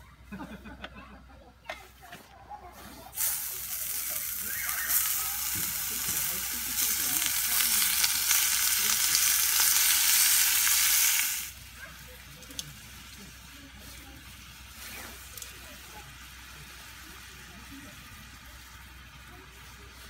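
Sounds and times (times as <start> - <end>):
food sizzling in hot pan: 3.1 - 20.0.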